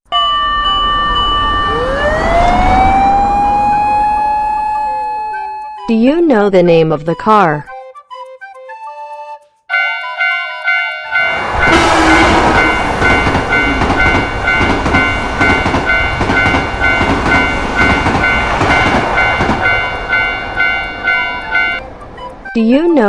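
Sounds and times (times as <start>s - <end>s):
crossing warning bell ringing: 0.1s - 7.5s, 9.7s - 23.0s
train wheels clattering: 11.3s - 21.8s.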